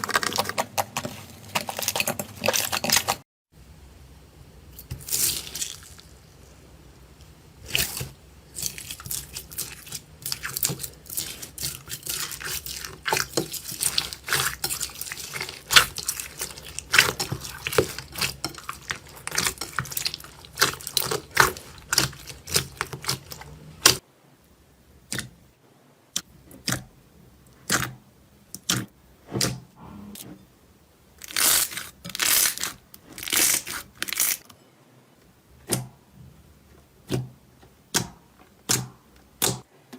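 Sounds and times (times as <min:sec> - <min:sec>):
slime squelches: 0:07.6 - 0:24.0
slime crackling and popping: 0:07.7 - 0:24.0.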